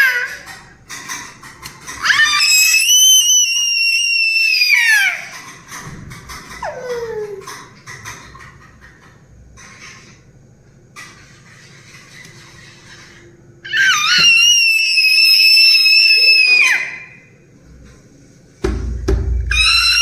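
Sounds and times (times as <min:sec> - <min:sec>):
baby squealing high-pitched: 0:00.0 - 0:00.4, 0:02.0 - 0:05.3, 0:06.6 - 0:07.5, 0:13.7 - 0:17.2, 0:19.5 - 0:20.0.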